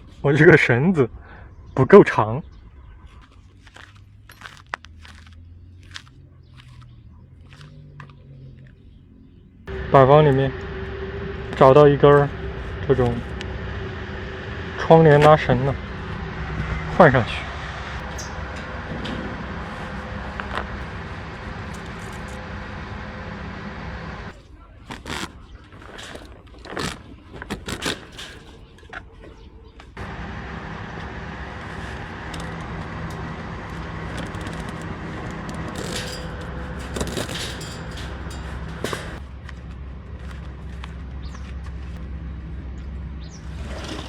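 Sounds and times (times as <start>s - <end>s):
low background hum: 9.7s - 24.7s, 27.7s - 44.0s
rope and tarp handling clicks: 24.8s - 28.6s.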